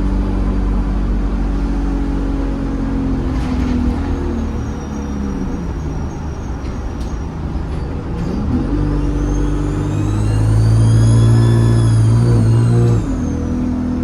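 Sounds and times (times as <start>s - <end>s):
bus engine pulling under load: 0.0s - 14.0s
turbocharger whistle: 9.0s - 13.9s.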